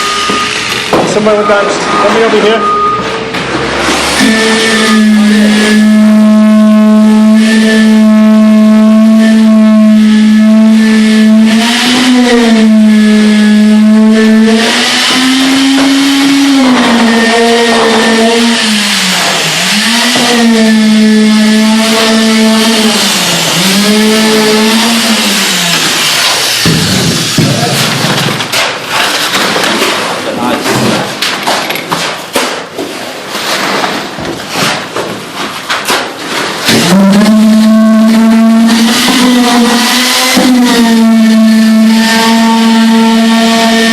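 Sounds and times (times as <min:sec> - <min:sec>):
concrete vibrator high-pitched hum: 0:02.3 - 0:28.4, 0:36.7 - 0:43.9.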